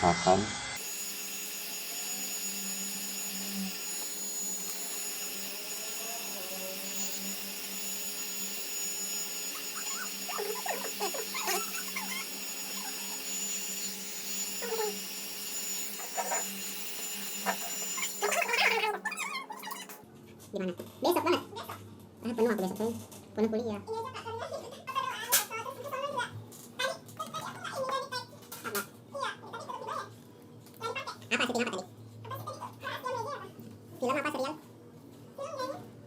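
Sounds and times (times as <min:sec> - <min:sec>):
small electric motor humming: 0:00.8 - 0:20.0.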